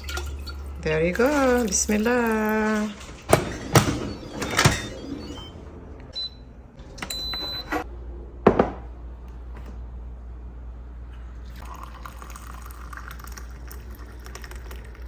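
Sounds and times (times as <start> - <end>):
kitchen appliance beep: 0.0 - 6.4, 7.0 - 7.8.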